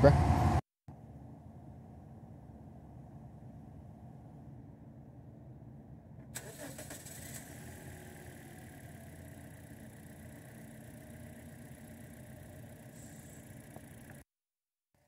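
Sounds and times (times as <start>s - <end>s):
car engine cranking: 6.2s - 14.2s
misfiring engine idling: 6.4s - 14.2s.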